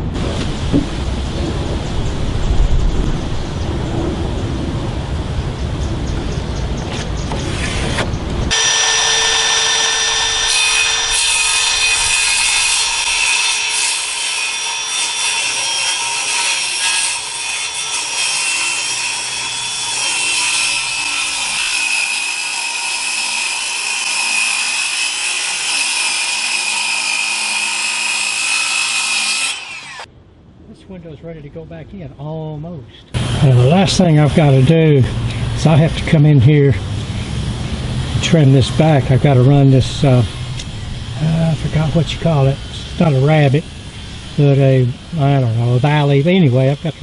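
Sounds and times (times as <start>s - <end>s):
power saw cutting wood: 7.3s - 30.1s, 33.2s - 36.2s, 37.2s - 47.0s.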